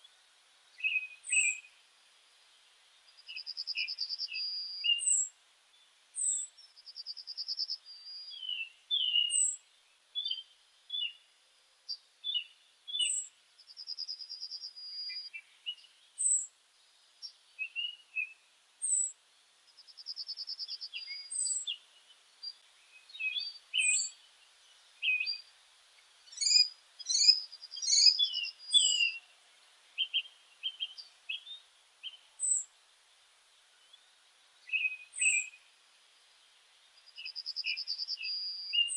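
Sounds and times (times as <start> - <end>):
birds chirping: 3.0 - 11.3, 19.7 - 32.7, 33.8 - 35.7, 36.9 - 38.9.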